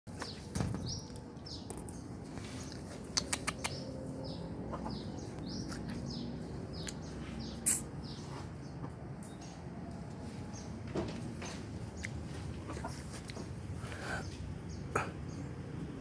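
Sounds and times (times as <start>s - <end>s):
bird chirping: 0.1s - 9.6s
sharp clicks: 3.1s - 3.8s.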